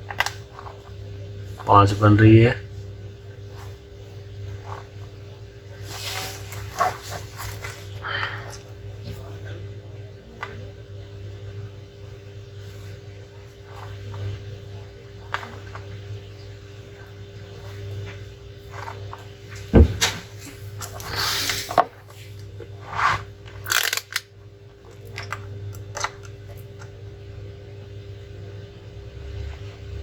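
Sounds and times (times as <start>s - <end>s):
low electrical hum: 0.0s - 30.0s
scraping and rustling: 4.4s - 8.0s, 17.6s - 24.0s.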